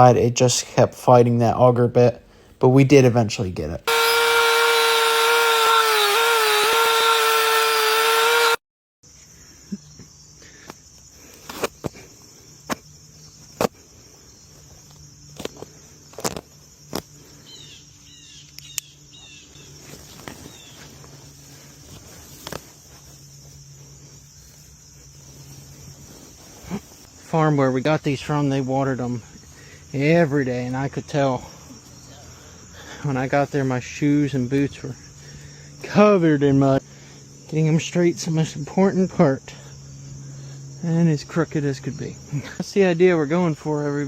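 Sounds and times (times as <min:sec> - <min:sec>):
insects chirring: 0:00.0 - 0:44.0
loud high whine: 0:03.8 - 0:08.6
bird chirps: 0:17.4 - 0:19.8.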